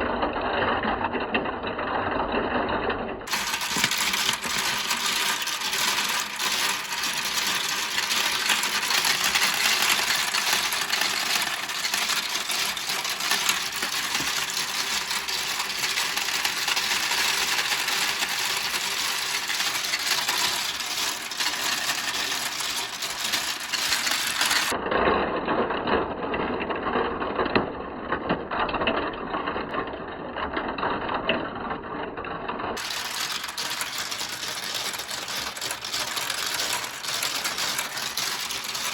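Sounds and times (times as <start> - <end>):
marbles rattling down plastic run: 3.2 - 24.8, 32.8 - 38.9.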